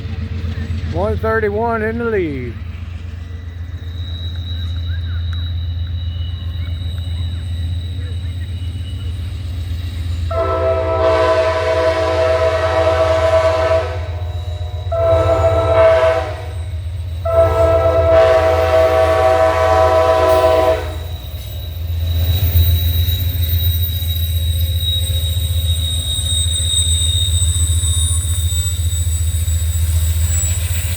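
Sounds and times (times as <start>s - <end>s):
train rumble: 0.0s - 30.9s
locomotive air horn blasts: 10.3s - 21.1s.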